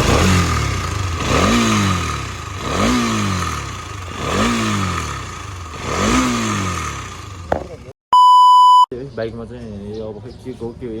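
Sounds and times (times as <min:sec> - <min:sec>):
motorcycle engine revving: 0:00.0 - 0:07.9.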